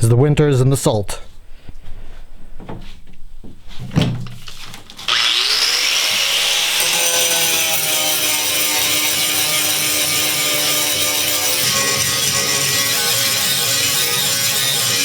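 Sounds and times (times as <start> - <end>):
handling knocks: 2.6 - 4.9
angle grinder cutting steel: 4.5 - 15.0.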